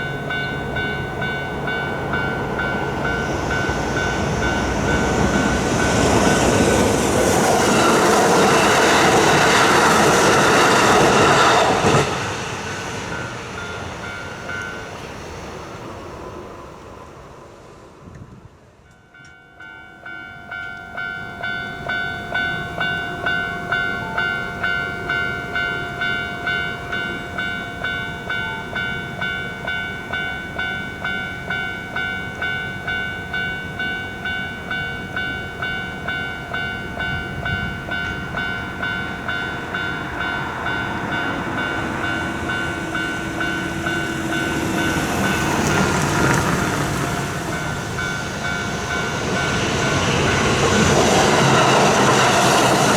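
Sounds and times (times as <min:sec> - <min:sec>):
level crossing warning bell: 0:00.0 - 0:15.6, 0:18.8 - 0:52.9
train rumbling: 0:00.0 - 0:52.9.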